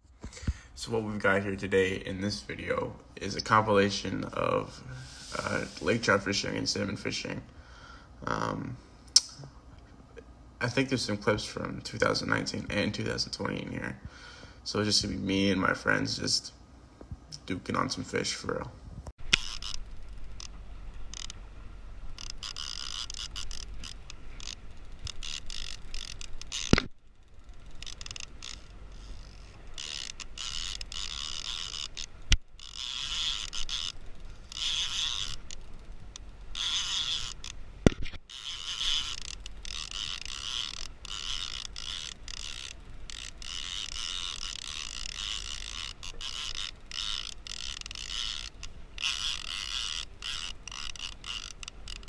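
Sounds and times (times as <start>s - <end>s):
fishing reel ratcheting: 19.3s - 21.4s, 22.1s - 37.6s, 38.3s - 52.0s
sharp clicks: 27.6s - 52.0s.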